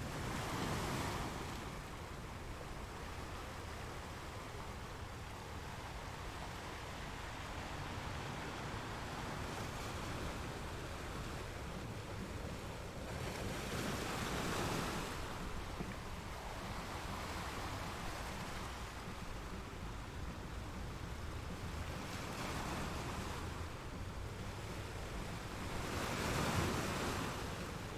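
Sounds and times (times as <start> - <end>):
sea waves breaking on shore: 0.0 - 27.9.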